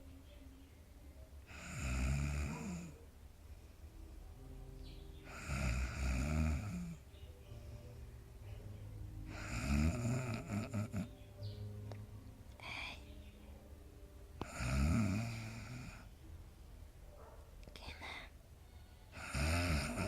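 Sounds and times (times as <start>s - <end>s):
dog snoring: 1.5s - 3.0s, 5.3s - 7.0s, 9.3s - 11.1s, 14.4s - 16.1s, 19.1s - 20.0s.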